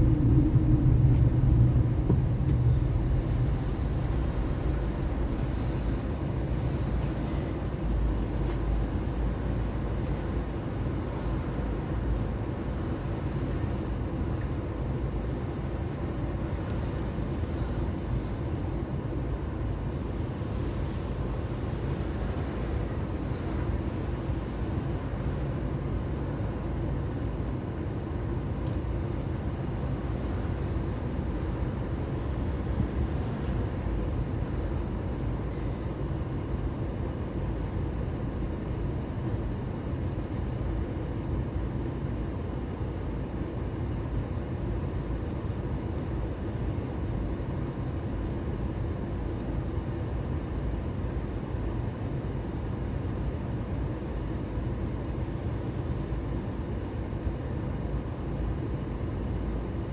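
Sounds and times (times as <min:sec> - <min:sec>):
car driving rumble: 0:00.0 - 0:18.8.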